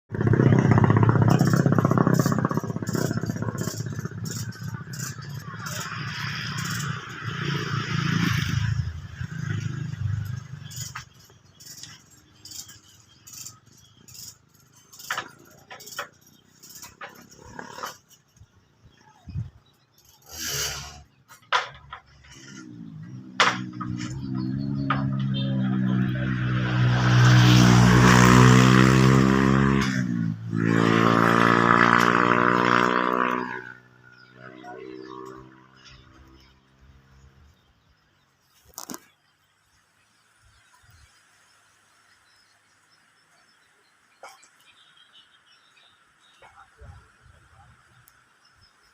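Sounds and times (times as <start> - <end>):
vehicle engine passing: 0.1 - 18.0, 22.1 - 37.4.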